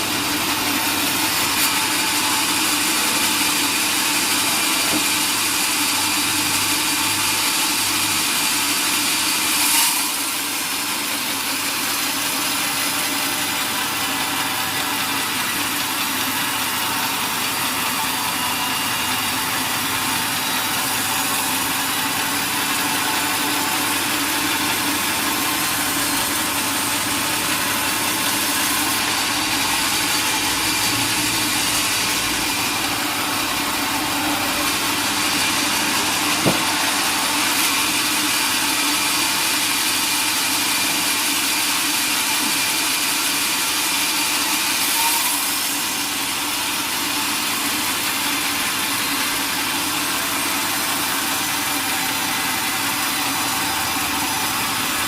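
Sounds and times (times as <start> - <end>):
sawmill machinery humming: 0.0 - 55.0
short knock: 36.4 - 36.9.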